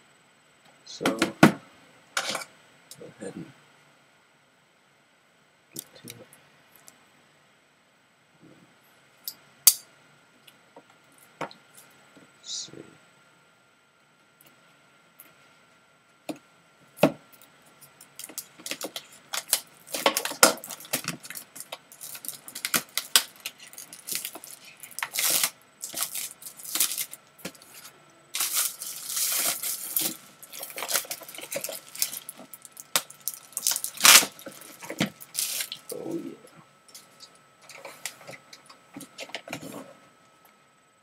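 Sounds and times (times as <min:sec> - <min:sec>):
cardboard packaging clicks and rustles: 0:18.0 - 0:35.9.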